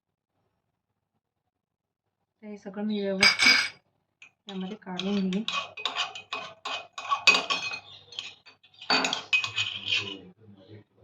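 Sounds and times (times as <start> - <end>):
metal spoon clinking on metal: 3.2 - 10.2.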